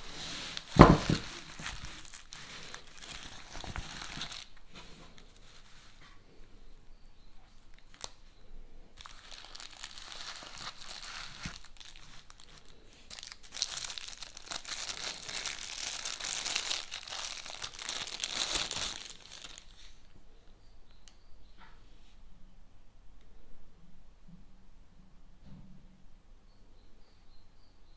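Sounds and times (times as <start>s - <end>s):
plastic packaging crinkling and tearing: 0.0s - 5.8s, 7.7s - 8.3s, 9.0s - 20.1s.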